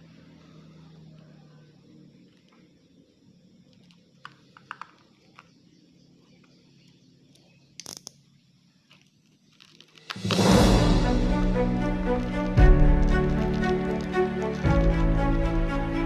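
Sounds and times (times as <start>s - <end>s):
faint low hum: 0.0s - 10.0s
small clicks and taps: 3.7s - 5.5s.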